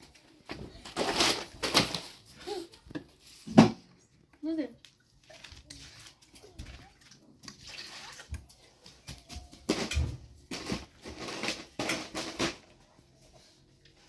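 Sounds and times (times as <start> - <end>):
water splashing and pouring: 5.0 - 8.9.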